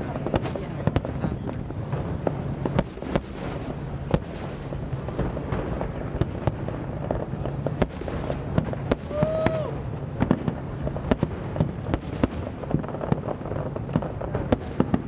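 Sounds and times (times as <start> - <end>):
fireworks bangs: 0.0 - 15.0
low rumble of explosions: 0.0 - 15.0.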